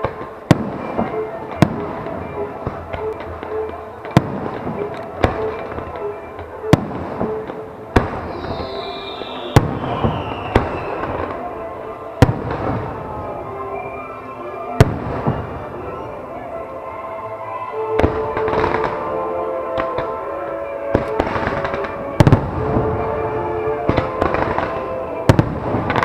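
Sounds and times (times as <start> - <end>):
fireworks booming with echo: 0.0 - 26.0.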